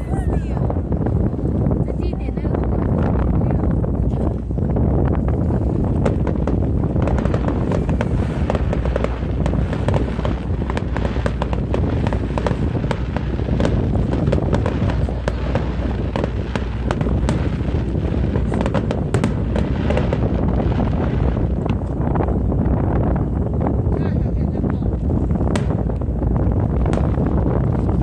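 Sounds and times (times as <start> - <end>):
fireworks booms: 0.0 - 28.0
fireworks cracks and crackles: 5.8 - 23.2, 25.3 - 28.0.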